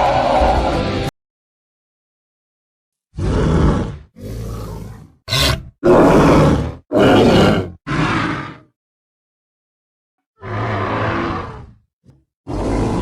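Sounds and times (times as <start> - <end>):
creature grunts and roars: 3.1 - 8.8, 10.4 - 13.0.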